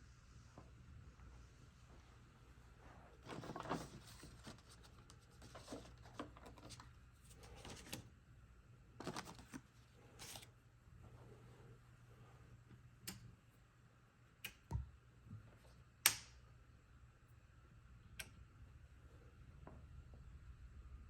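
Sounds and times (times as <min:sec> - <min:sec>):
low electrical hum: 0:00.0 - 0:21.0
objects handled and moved: 0:02.8 - 0:08.1, 0:09.0 - 0:10.5.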